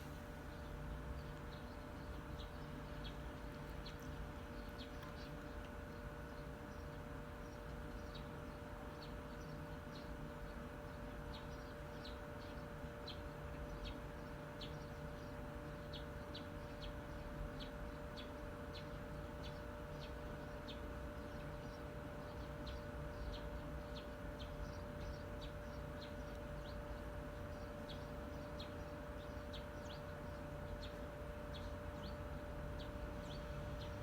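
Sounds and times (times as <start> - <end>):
electric fan humming: 0.0 - 34.0
bird chirping: 15.9 - 34.0.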